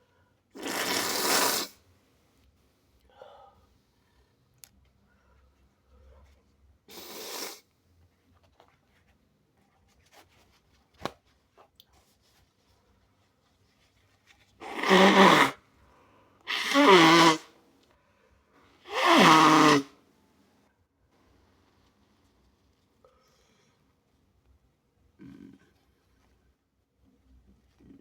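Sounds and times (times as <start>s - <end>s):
person sneezing wetly: 0.6s - 1.8s, 6.9s - 7.6s, 14.6s - 15.6s, 16.5s - 17.5s, 18.9s - 19.9s.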